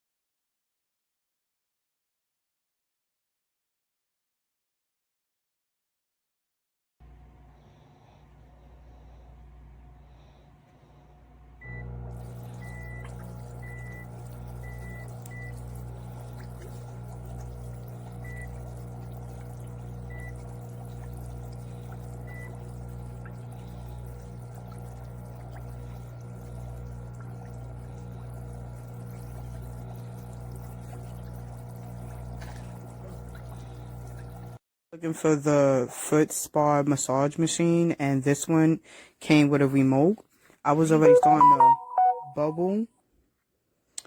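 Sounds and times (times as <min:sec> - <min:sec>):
foot spa motor humming: 0:10.2 - 0:34.6
water bubbling and churning: 0:12.4 - 0:34.5
short high beeps: 0:41.0 - 0:42.6.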